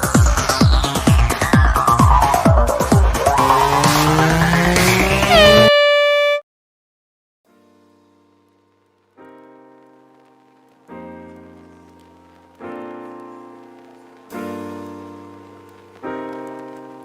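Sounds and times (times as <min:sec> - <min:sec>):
slow piano chords: 0:07.5 - 0:17.0.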